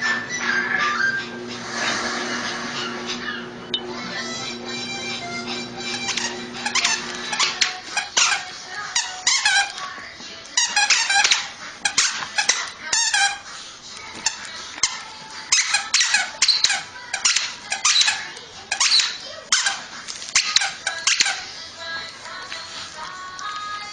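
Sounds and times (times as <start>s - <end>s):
rapid high-pitched squeaking: 5.8s - 9.9s, 10.5s - 21.5s.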